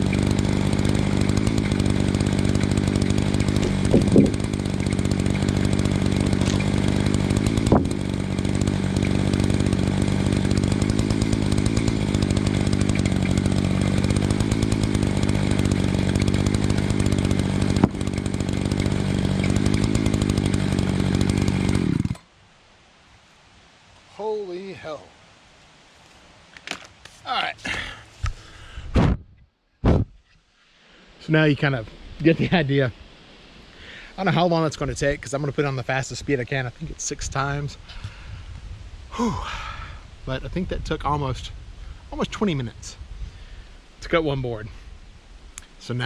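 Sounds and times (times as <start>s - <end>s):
chainsaw cutting through log: 0.0s - 22.3s.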